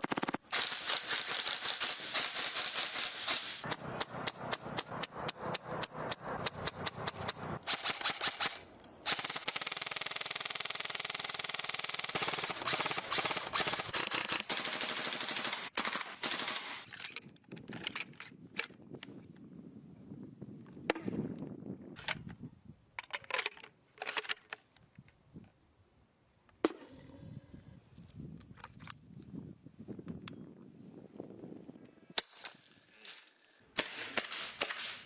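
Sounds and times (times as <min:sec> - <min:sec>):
airsoft gun automatic burst: 0:00.0 - 0:03.6, 0:07.6 - 0:16.9.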